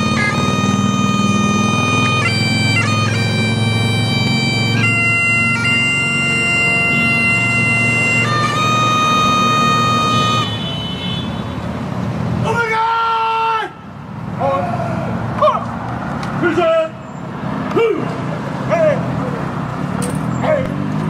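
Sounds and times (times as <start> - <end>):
bagpipes playing a slow tune: 0.0 - 11.0.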